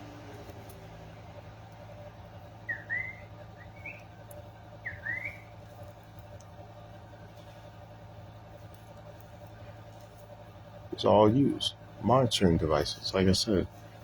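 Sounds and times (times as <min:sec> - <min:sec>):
steady low hum: 0:00.0 - 0:14.0
whistled chirps: 0:02.6 - 0:04.1, 0:04.8 - 0:05.5.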